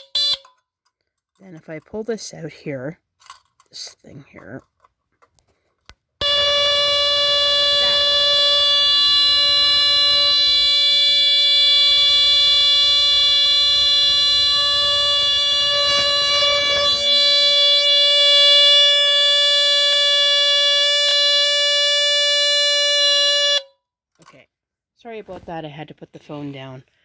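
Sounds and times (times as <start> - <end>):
alarm horn buzzing tone: 0.0 - 0.5, 6.2 - 23.7.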